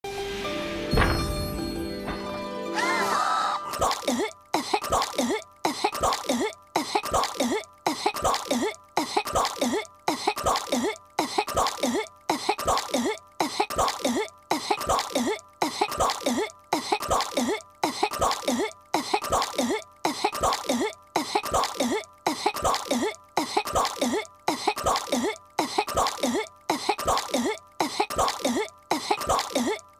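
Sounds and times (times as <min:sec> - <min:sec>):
cartoon girl coughing: 0:03.7 - 0:29.9.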